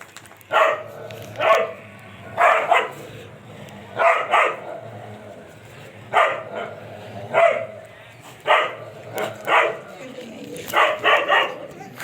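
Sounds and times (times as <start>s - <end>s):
dog barking: 0.5s - 1.8s, 2.4s - 3.0s, 4.0s - 4.8s, 6.1s - 7.8s, 8.4s - 10.0s, 10.7s - 12.0s.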